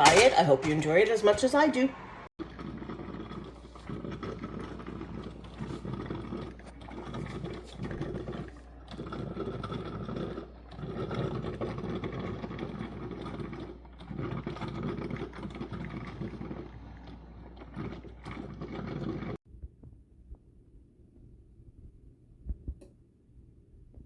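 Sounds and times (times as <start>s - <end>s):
coffee maker gurgling and sputtering: 2.4s - 19.4s.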